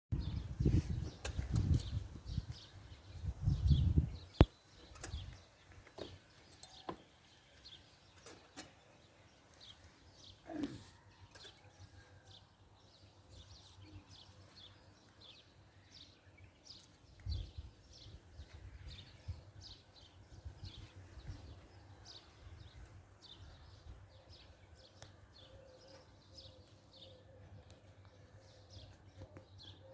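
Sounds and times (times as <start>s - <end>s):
wind rumbling on microphone: 0.1s - 5.5s
small birds chirping: 0.1s - 29.9s
low falling animal call: 10.4s - 10.9s.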